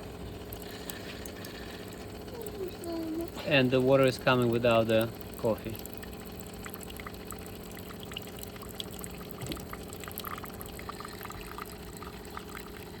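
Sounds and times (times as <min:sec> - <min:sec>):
coffee machine pump humming: 0:00.0 - 0:13.0
water pouring into cup: 0:00.1 - 0:13.0.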